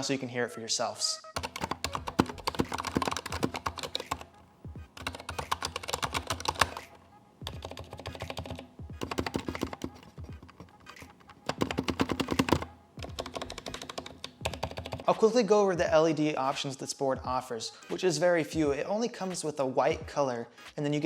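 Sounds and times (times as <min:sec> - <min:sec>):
mechanical keyboard typing: 0:01.4 - 0:04.4, 0:05.0 - 0:15.2.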